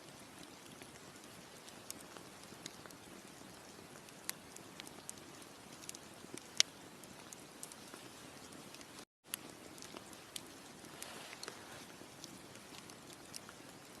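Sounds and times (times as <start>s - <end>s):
campfire crackling: 0.0s - 14.0s.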